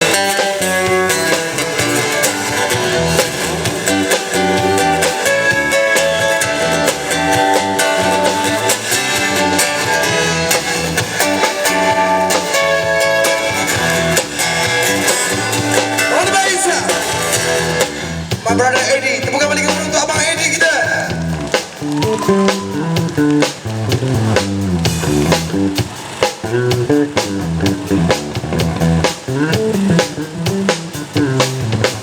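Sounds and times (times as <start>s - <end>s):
bass guitar groove: 0.0s - 32.0s
live band music: 0.0s - 32.0s.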